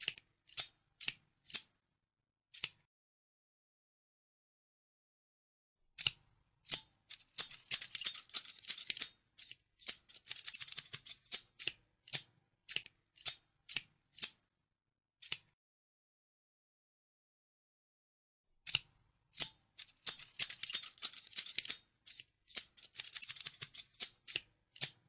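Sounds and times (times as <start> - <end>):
scissors snipping: 2.6 - 2.8, 6.0 - 14.4, 15.2 - 15.6, 18.7 - 25.0.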